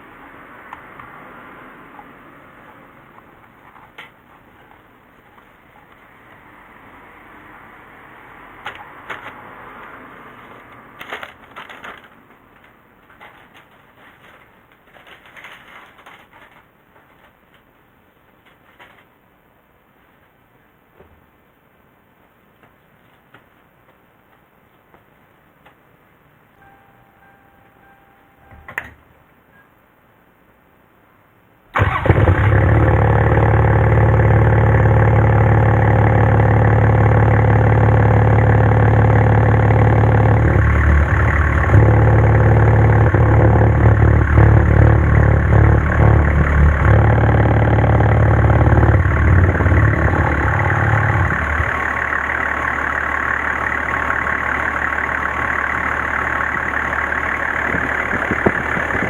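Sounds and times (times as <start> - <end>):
diesel engine idling: 31.8 - 59.0.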